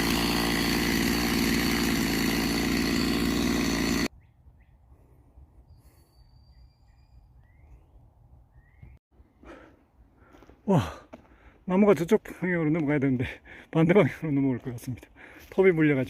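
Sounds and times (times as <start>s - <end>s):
chainsaw running: 0.0s - 4.1s
faint birds chirping: 4.1s - 10.3s.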